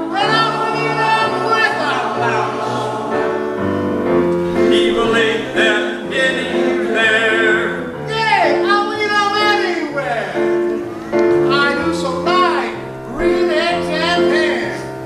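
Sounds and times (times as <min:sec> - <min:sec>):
men singing: 0:00.0 - 0:03.7, 0:04.5 - 0:10.6
piano chords: 0:00.0 - 0:15.0.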